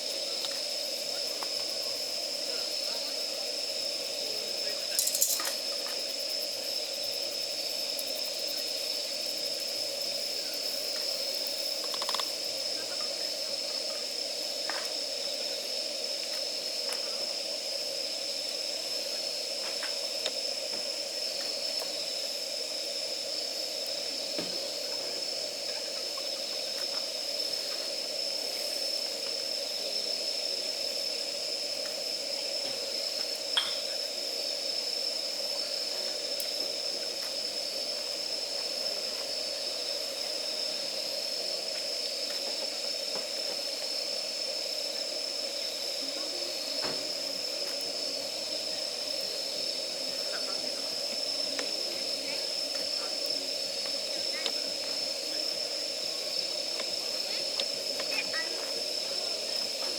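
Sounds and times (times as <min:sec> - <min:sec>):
campfire burning with hiss: 0:00.0 - 0:59.9
faint fire crackles: 0:00.0 - 0:59.9
sharp fire pop: 0:33.6 - 0:34.0, 0:46.8 - 0:47.1.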